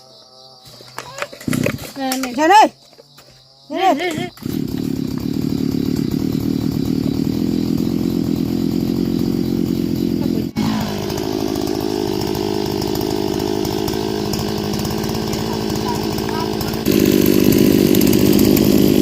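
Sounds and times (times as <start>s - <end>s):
small engine running: 0.9s - 2.7s, 3.9s - 19.0s.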